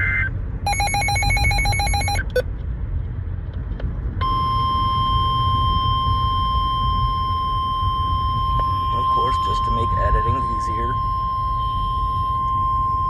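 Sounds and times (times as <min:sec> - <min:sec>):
pulsing electronic beeps: 0:00.0 - 0:02.4
steady warning alarm tone: 0:00.7 - 0:02.2, 0:04.2 - 0:13.0.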